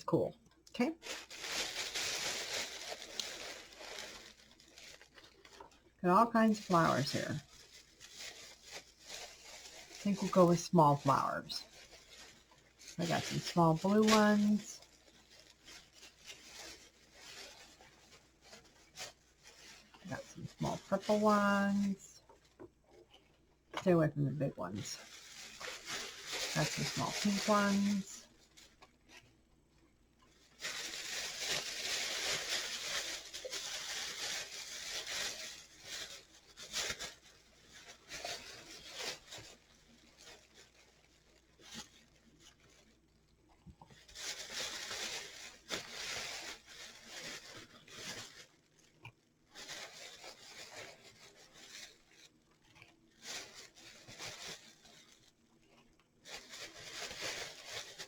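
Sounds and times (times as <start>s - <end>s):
artificial flowers rustling: 0.0s - 58.0s.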